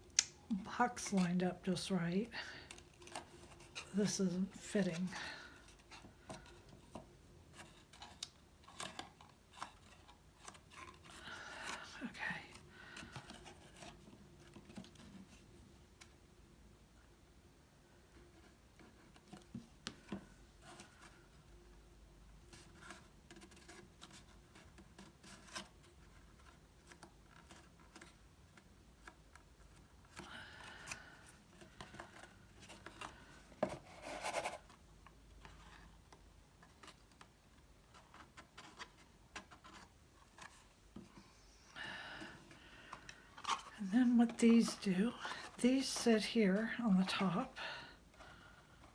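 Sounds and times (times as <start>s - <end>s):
paper rustling and rubbing: 31.6s - 41.4s.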